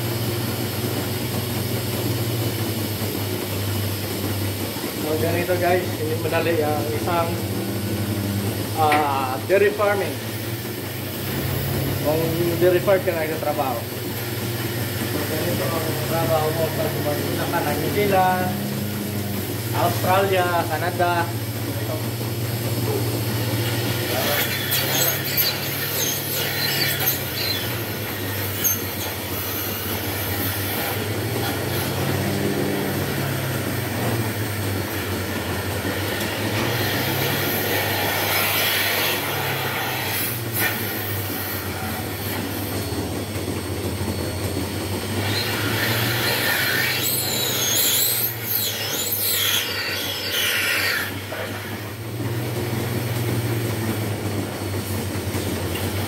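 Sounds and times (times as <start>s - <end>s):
machinery clatter: 0.0s - 56.0s
milking machine low hum: 0.0s - 56.0s
metallic squeals: 24.1s - 29.3s.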